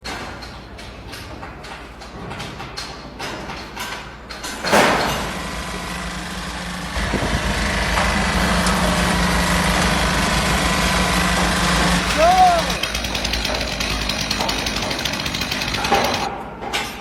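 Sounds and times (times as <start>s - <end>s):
machine engine running: 5.1s - 16.3s.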